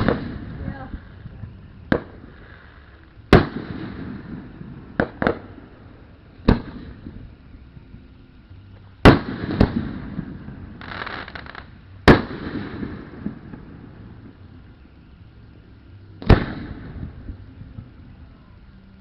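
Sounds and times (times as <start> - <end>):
fireworks booming: 0.0 - 8.2, 8.9 - 15.2, 16.2 - 18.4
fireworks crackle: 0.0 - 19.0.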